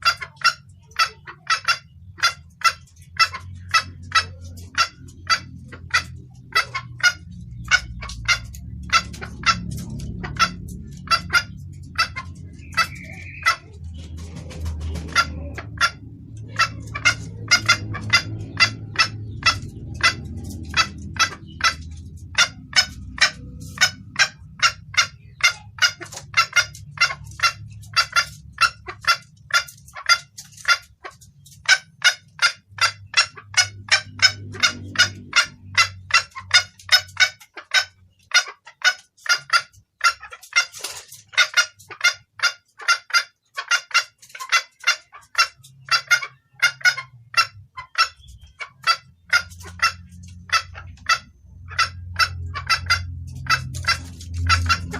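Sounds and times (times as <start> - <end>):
hen clucking: 0.0 - 54.9
low rumble: 1.9 - 29.6, 32.6 - 37.2, 47.0 - 54.9.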